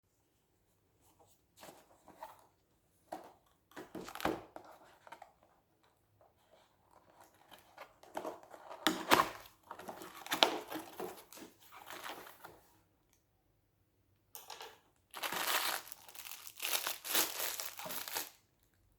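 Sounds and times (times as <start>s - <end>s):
plastic wrapping crinkling and tearing: 15.2s - 18.4s.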